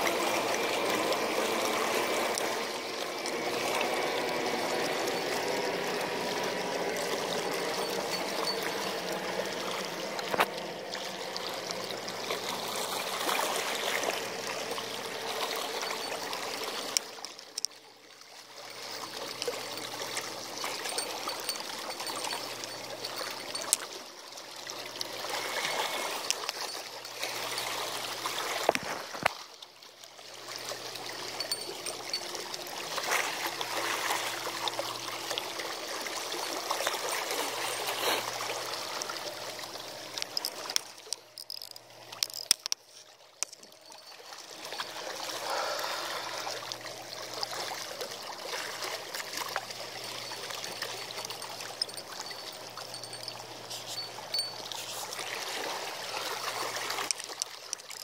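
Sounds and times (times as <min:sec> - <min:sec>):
seawater sloshing among rocks: 0:30.5 - 0:58.0.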